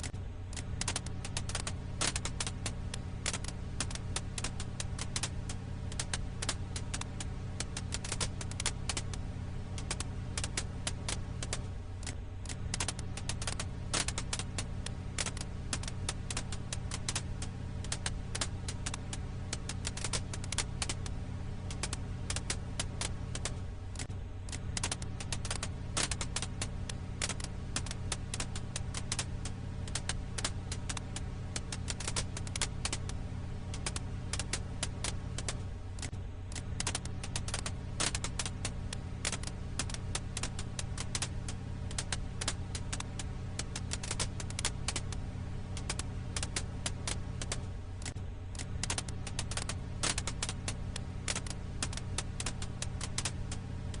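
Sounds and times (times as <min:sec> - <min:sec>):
low fire rumble: 0:00.0 - 0:54.0
firewood pops and snaps: 0:33.7 - 0:54.0.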